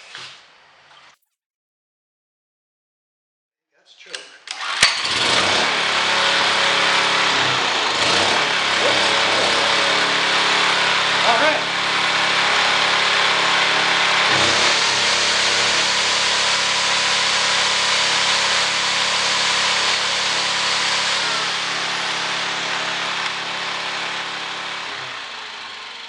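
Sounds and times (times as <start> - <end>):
portable generator engine running: 4.8 - 26.0.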